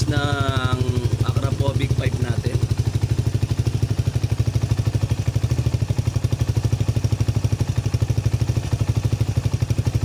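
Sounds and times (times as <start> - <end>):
motorcycle idling: 0.0 - 10.0.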